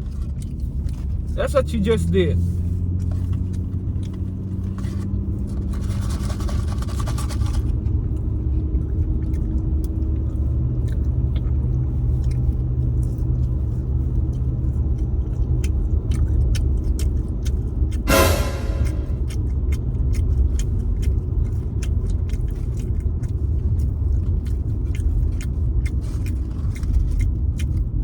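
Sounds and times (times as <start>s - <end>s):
car cabin low rumble: 0.0s - 6.0s.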